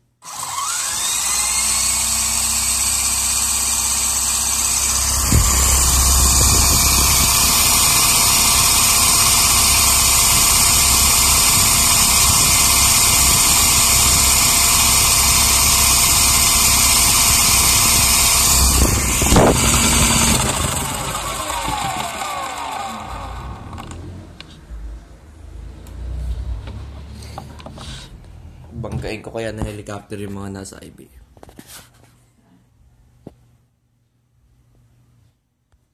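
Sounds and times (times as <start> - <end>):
rc helicopter motor whine: 0.2 - 24.1.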